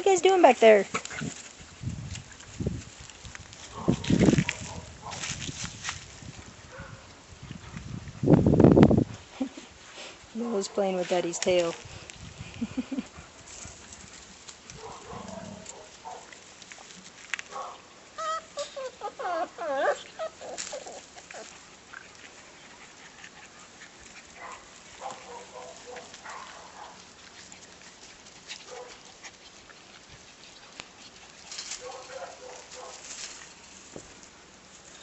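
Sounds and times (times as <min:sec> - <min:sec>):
puppies yipping and whining: 0:18.1 - 0:23.0.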